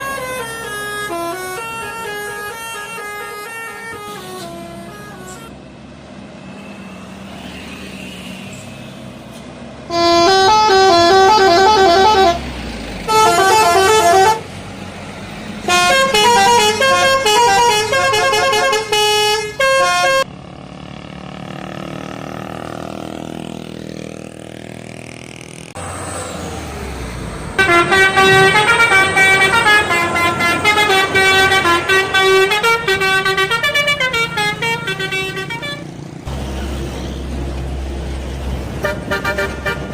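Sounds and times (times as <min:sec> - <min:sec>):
bus musical horns: 0:00.0 - 0:05.6, 0:09.8 - 0:14.6, 0:15.6 - 0:20.3, 0:27.5 - 0:36.1, 0:38.6 - 0:39.9
traffic noise: 0:00.0 - 0:39.9.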